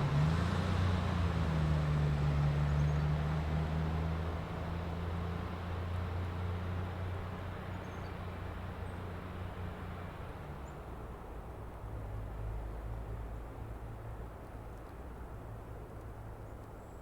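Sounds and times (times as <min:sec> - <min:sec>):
road noise: 0:00.0 - 0:06.6.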